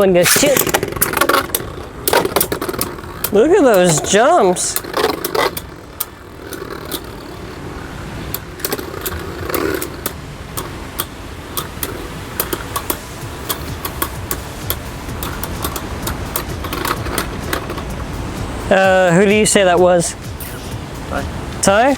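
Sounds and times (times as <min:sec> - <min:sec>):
spinning tops whirring: 0:00.0 - 0:21.9
spinning tops clacking together: 0:00.2 - 0:18.7.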